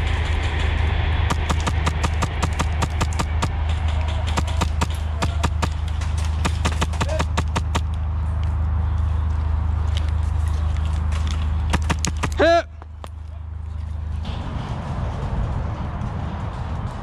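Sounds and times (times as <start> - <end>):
low hum: 0.0 - 17.0
airsoft gunfire: 1.3 - 7.9, 11.7 - 12.4.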